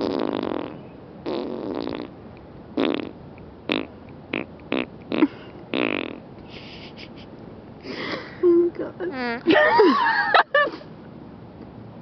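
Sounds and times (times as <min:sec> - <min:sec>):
mouth fart noises: 0:00.0 - 0:02.2, 0:02.8 - 0:06.2, 0:09.1 - 0:09.5.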